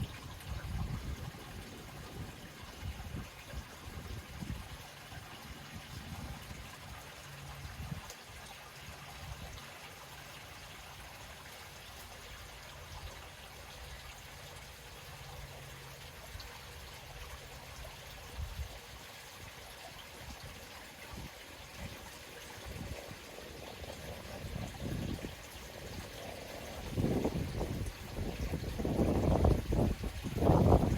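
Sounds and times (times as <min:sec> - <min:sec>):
lake water lapping: 0:18.8 - 0:30.9.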